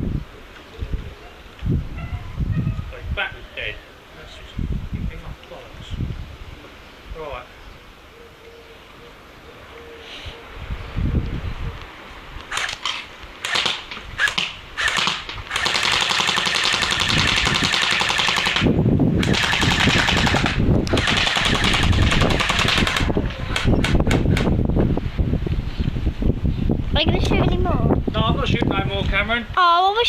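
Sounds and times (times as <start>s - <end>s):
airsoft rifle firing: 12.5s - 24.5s.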